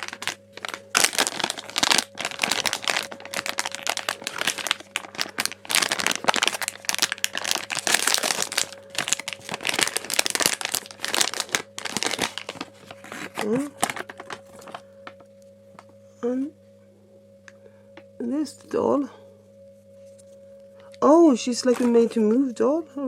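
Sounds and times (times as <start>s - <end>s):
plastic packaging crinkling: 0.0s - 15.9s, 21.5s - 22.4s.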